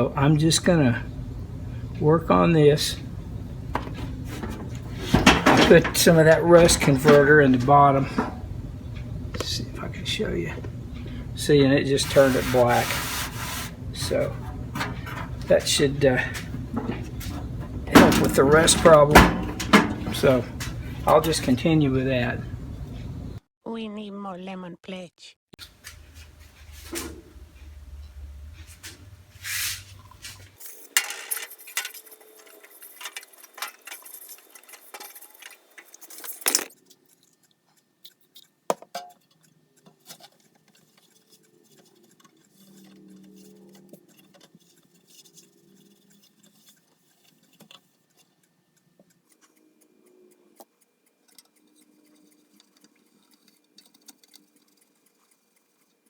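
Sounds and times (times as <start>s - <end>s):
small metal objects clinking: 30.6s - 37.1s.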